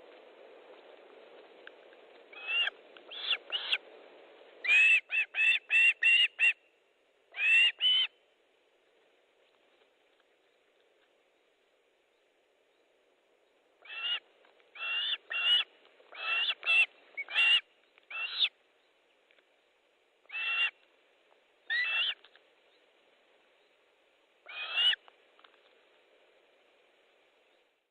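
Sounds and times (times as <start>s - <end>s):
bird whistled calls: 2.4s - 3.8s, 14.8s - 18.5s, 21.7s - 22.2s.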